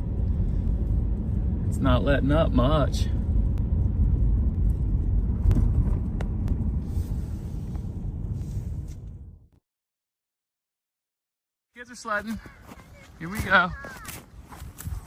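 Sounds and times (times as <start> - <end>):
low steady outdoor rumble: 0.0 - 9.5.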